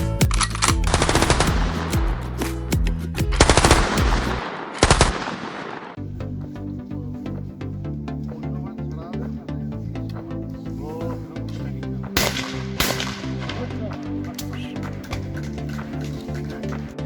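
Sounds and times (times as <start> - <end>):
music: 0.0 - 4.5, 6.0 - 17.0
rapid gunfire: 3.4 - 6.0, 12.2 - 13.9.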